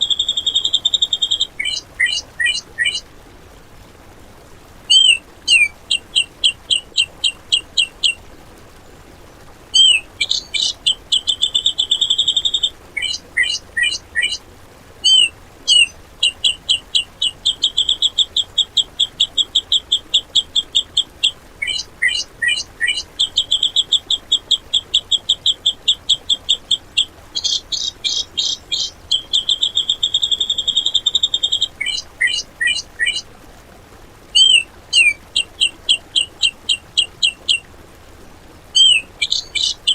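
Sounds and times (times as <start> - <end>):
bulbul singing: 0.0 - 3.0, 4.9 - 8.3, 9.8 - 14.4, 15.0 - 33.2, 34.4 - 37.6, 38.8 - 39.9.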